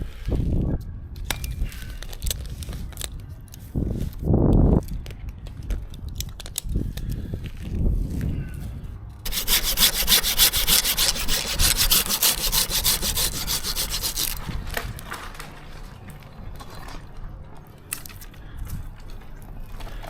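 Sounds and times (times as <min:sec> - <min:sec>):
hand saw cutting wood: 0:09.3 - 0:14.6
rubbing: 0:09.3 - 0:14.6.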